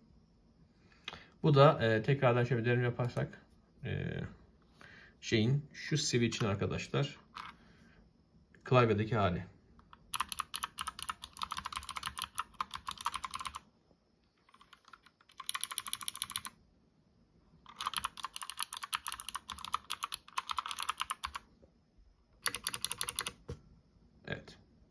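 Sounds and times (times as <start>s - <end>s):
mechanical keyboard typing clicks: 9.8s - 13.6s, 14.5s - 16.5s, 17.7s - 21.5s, 22.4s - 23.6s.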